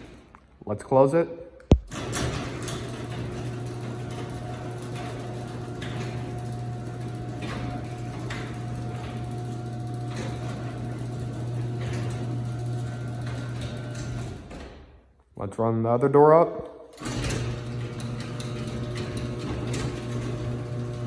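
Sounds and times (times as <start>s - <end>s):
door and rail clicks and knocks: 1.7s - 8.7s
garage door opener motor humming: 1.9s - 14.9s, 16.9s - 21.0s.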